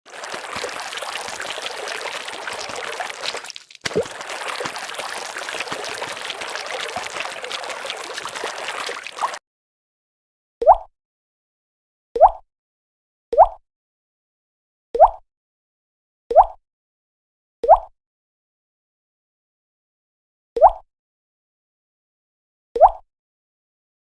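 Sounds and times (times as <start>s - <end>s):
liquid pouring and gurgling: 0.0s - 9.4s.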